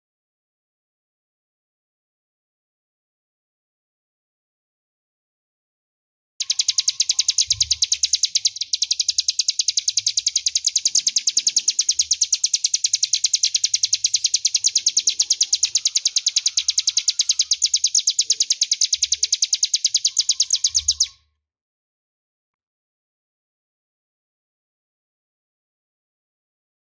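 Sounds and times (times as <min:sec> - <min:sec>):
bird singing fast high trill: 0:06.4 - 0:21.2.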